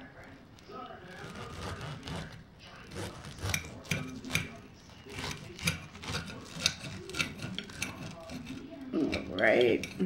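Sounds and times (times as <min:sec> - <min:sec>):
knife sawing through bread: 0:01.0 - 0:10.0
knife clicking on plate: 0:02.9 - 0:10.0.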